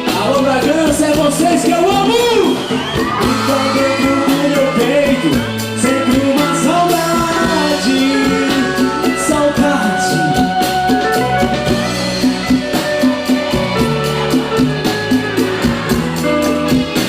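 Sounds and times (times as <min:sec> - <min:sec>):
man singing: 0:00.0 - 0:02.3, 0:03.0 - 0:11.6
drum kit beat: 0:00.0 - 0:17.0
live band playing: 0:00.0 - 0:17.0.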